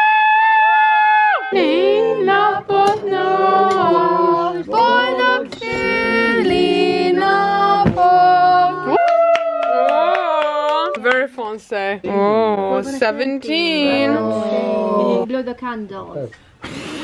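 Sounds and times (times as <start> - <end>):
person singing: 1.5 - 9.0.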